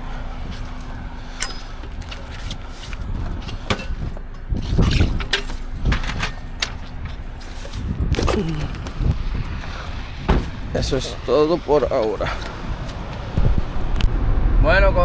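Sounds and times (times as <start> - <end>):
heavy thumps: 0.0 - 11.3
steady low hum: 0.0 - 15.0.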